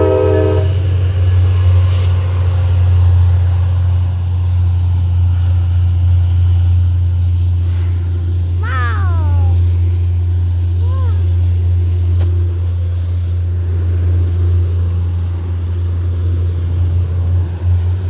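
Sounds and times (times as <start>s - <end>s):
train air horn chord: 0.0s - 0.8s
diesel locomotive engine humming: 0.0s - 18.0s.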